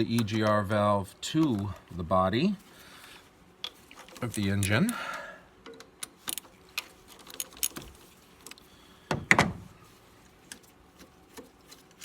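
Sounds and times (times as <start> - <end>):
metal clunk and rattle: 9.1 - 9.7.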